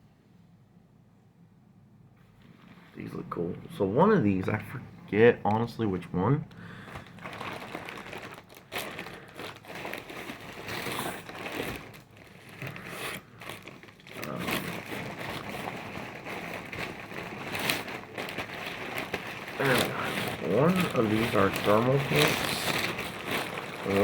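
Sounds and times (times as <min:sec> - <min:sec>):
packaging crinkling and rustling: 0:02.2 - 0:03.3, 0:06.6 - 0:24.0.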